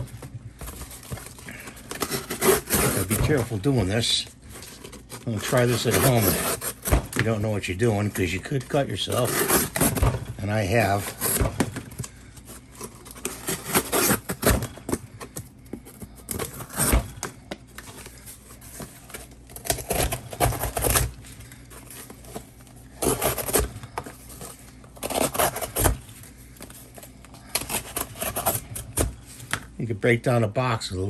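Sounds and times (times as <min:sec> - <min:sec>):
knife sawing through cardboard: 0:01.9 - 0:11.6, 0:12.8 - 0:14.8, 0:16.3 - 0:17.2, 0:19.6 - 0:21.2, 0:23.0 - 0:23.9, 0:25.0 - 0:26.0, 0:27.6 - 0:29.1.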